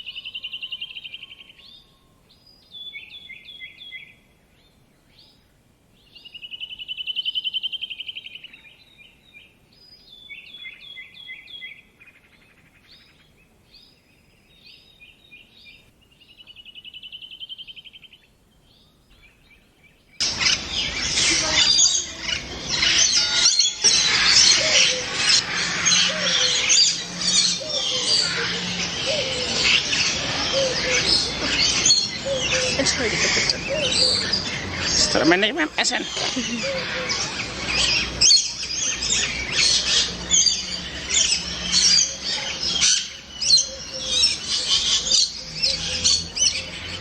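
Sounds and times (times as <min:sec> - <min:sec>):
chorus of birds chirping: 0:00.0 - 0:47.0
bird singing trilled phrases: 0:12.9 - 0:47.0.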